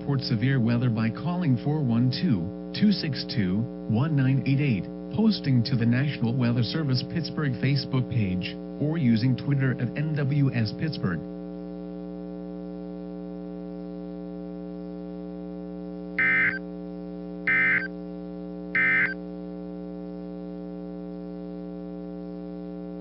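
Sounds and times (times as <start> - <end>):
steady electrical hum: 0.0 - 23.0
warbling data bursts: 16.2 - 16.6, 17.5 - 17.9, 18.8 - 19.2.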